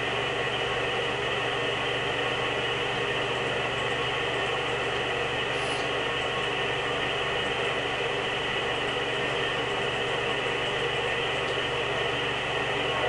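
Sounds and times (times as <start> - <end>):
steady mechanical hiss: 5.5 - 6.0.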